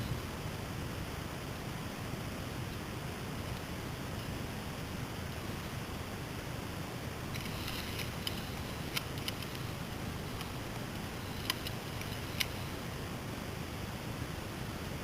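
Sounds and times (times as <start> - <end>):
outdoor air hiss: 0.0 - 15.0
sharp clicks: 7.3 - 12.7.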